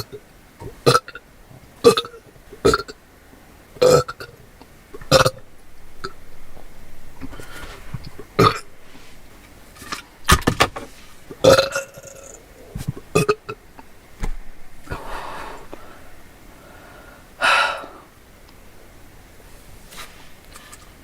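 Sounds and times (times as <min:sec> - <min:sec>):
person burping: 0:03.8 - 0:04.3, 0:08.4 - 0:08.7, 0:11.4 - 0:12.4, 0:13.1 - 0:13.6.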